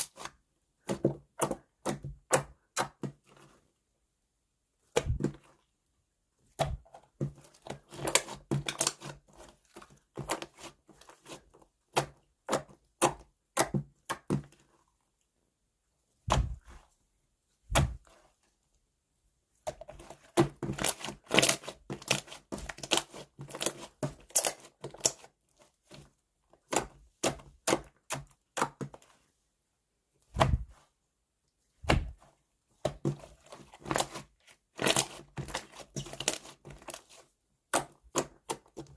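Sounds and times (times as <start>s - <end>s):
dull deep thuds: 16.3s - 16.7s, 17.7s - 18.0s, 30.4s - 30.8s, 31.8s - 32.2s.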